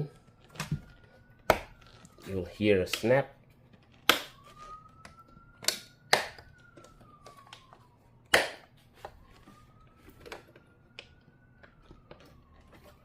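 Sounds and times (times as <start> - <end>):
plastic clips snapping shut: 5.6 - 7.6.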